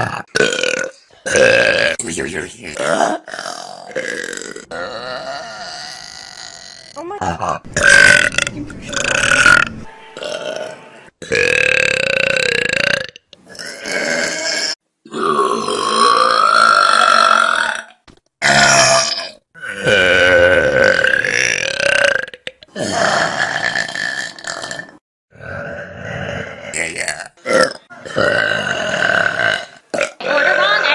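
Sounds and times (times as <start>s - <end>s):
person burping: 0.0s - 2.1s, 2.7s - 30.9s.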